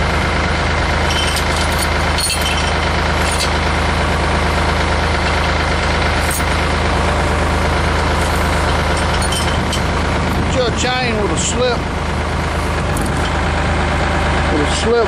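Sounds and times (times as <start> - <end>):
tractor engine idling: 0.0 - 15.0
short clinks: 1.1 - 3.6, 6.2 - 6.6, 8.1 - 10.1.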